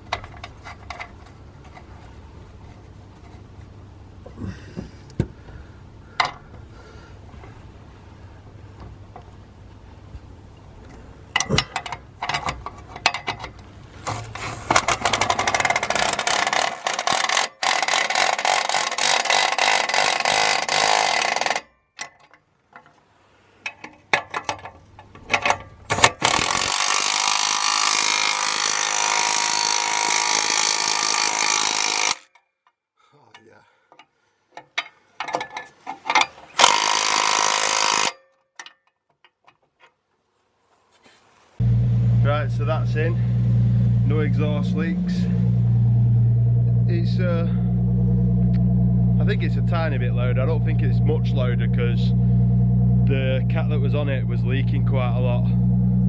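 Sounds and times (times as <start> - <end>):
metal clicks and knocks: 0.0 - 3.4, 10.8 - 23.0, 23.6 - 28.9, 33.3 - 40.0
power wrench clicking: 11.4 - 22.2, 25.3 - 32.4, 36.6 - 38.8.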